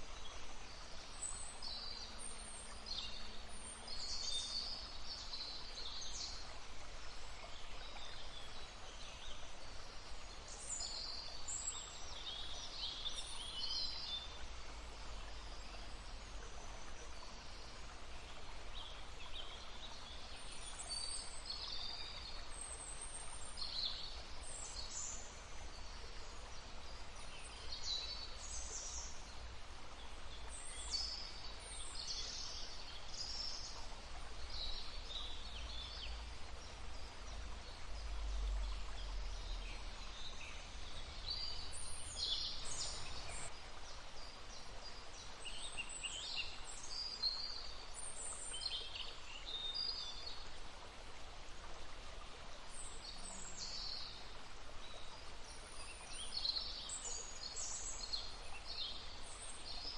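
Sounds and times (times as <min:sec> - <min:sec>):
babbling stream: 0:00.0 - 0:59.9
songbirds chirping: 0:00.0 - 0:59.9.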